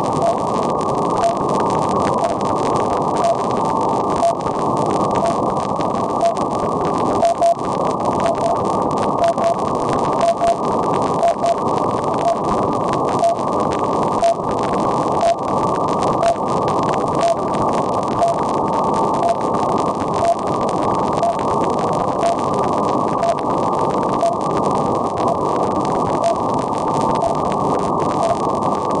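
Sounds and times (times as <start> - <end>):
radio static hiss: 0.0 - 29.0
short beep ticks: 0.2 - 0.4, 1.2 - 1.4, 5.2 - 5.4, 7.2 - 7.6, 8.2 - 8.6, 10.2 - 10.6, 11.2 - 11.6, 13.2 - 13.4, 15.2 - 15.4, 16.2 - 16.4, 20.2 - 20.4, 21.2 - 21.4, 24.2 - 24.4, 26.2 - 26.4, 27.2 - 27.4.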